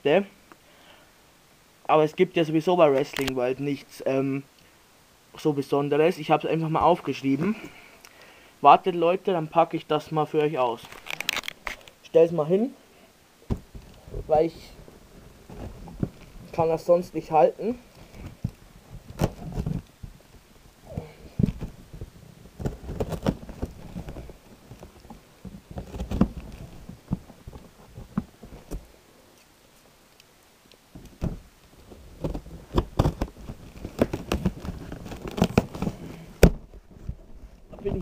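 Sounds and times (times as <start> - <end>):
cardboard parcel being opened: 10.8 - 11.9, 17.9 - 19.9, 20.9 - 28.9, 31.0 - 38.0.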